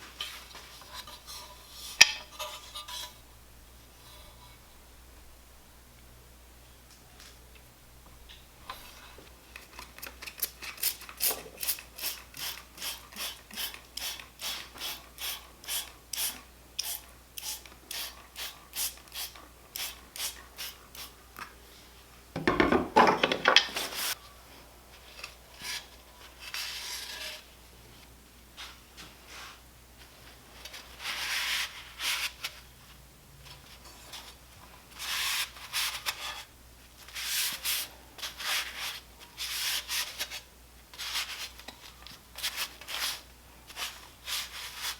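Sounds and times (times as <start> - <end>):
hand tool scraping strokes: 0.2 - 3.2, 26.5 - 27.5.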